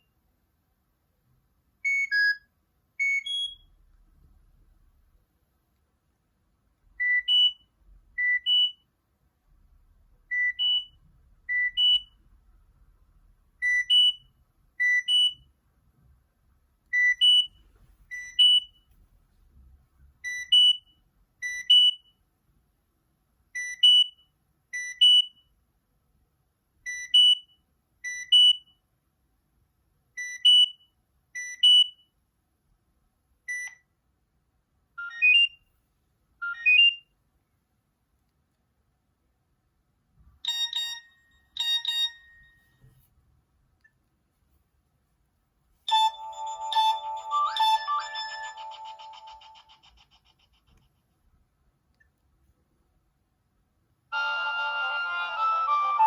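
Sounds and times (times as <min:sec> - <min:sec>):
two-note electronic ringtone beeps: 0:40.5 - 0:42.7, 0:45.9 - 0:49.9
ringtone with rising notes: 0:40.5 - 0:42.8, 0:45.9 - 0:50.5, 0:54.1 - 0:56.0.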